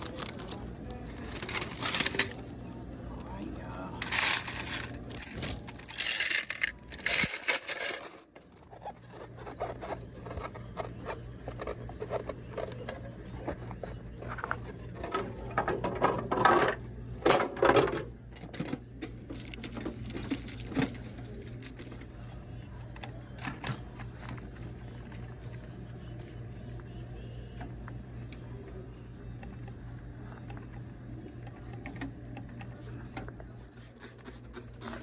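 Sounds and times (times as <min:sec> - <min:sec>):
coins clinking and rattling: 0:04.0 - 0:08.7, 0:19.3 - 0:22.1
clicks and scrapes: 0:08.3 - 0:15.8.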